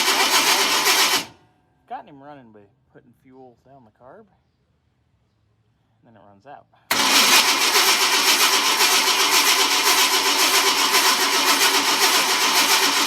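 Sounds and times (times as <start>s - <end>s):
starter cranking engine: 0.0s - 1.4s, 6.9s - 13.0s.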